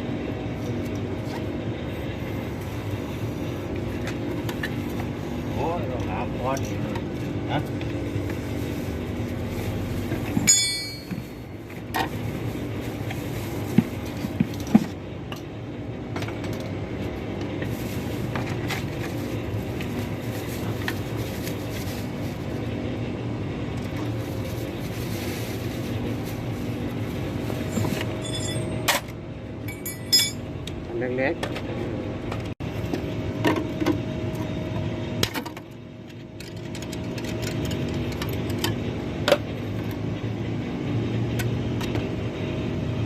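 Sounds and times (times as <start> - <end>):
low mechanical hum: 0.0 - 43.0
hand tools clinking against metal: 10.4 - 11.2, 28.1 - 29.0, 29.7 - 30.4.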